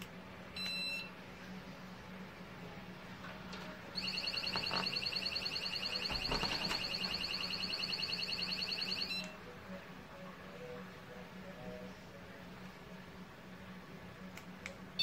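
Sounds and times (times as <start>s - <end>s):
pulsing electronic alarm siren: 4.0s - 9.3s.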